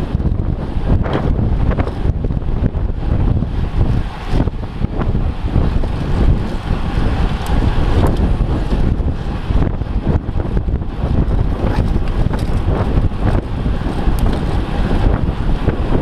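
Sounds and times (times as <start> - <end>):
wind buffeting microphone: 0.0 - 16.0
faint clicks and rattles: 11.7 - 12.7.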